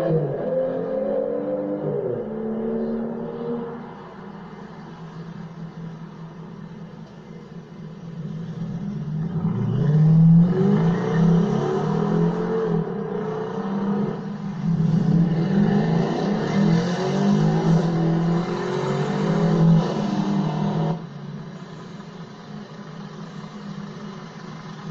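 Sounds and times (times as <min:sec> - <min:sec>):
car engine revving: 0:08.0 - 0:21.1.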